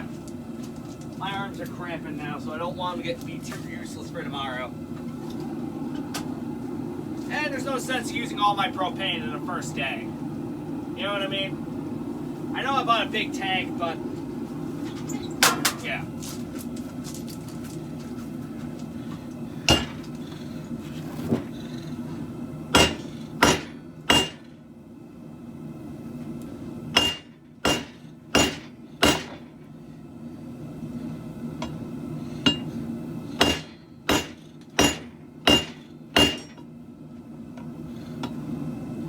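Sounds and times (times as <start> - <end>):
forge burner roaring: 0.0 - 39.0
hammer striking blade on anvil: 19.7 - 20.0, 22.8 - 24.4, 27.0 - 29.4, 32.4 - 32.7, 33.4 - 36.6.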